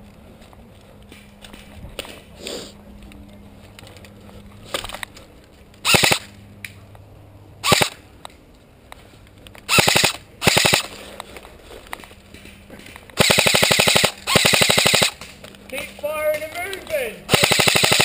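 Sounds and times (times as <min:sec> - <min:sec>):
airsoft rifle full-auto bursts: 0:05.8 - 0:06.3, 0:07.6 - 0:08.0, 0:09.7 - 0:10.9, 0:13.2 - 0:15.2, 0:17.3 - 0:18.0.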